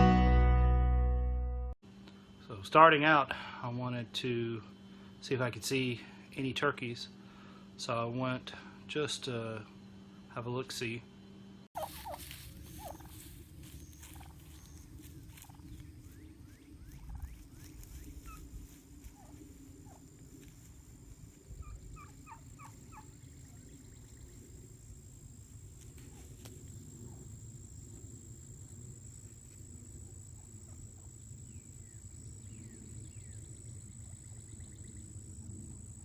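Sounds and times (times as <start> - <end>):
wild turkeys yelping and clucking: 11.8 - 27.3.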